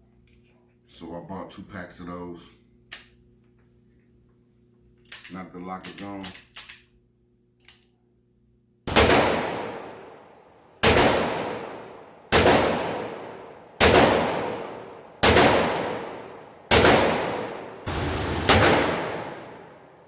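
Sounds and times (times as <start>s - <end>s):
revolver shots echoing: 10.8s - 20.0s.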